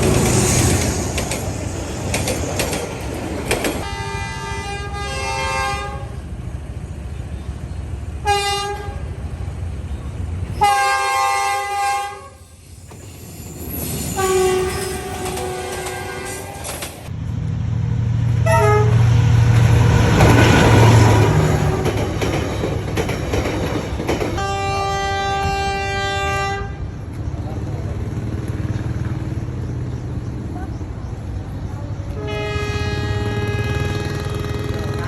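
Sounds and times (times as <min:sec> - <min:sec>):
rumble and clatter of moving train: 0:00.0 - 0:35.0
locomotive horn blasts: 0:03.8 - 0:06.2, 0:08.2 - 0:09.1, 0:10.6 - 0:12.4, 0:14.1 - 0:16.7, 0:18.4 - 0:19.2, 0:24.4 - 0:26.9, 0:32.1 - 0:35.0.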